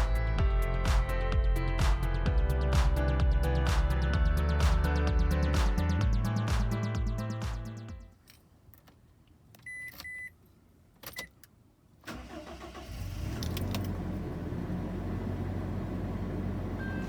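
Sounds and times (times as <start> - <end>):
short electronic beeps: 9.7 - 10.4
engine cranking and idling: 12.1 - 17.0.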